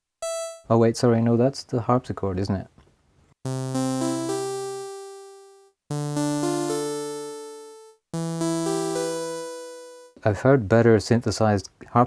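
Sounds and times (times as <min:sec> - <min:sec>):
synthesized harpsichord keyboard: 0:00.0 - 0:00.7, 0:03.5 - 0:10.2.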